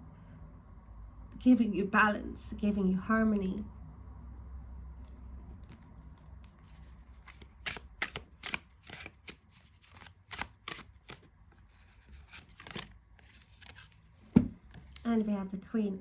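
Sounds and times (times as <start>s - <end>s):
cards being shuffled: 5.6s - 15.2s.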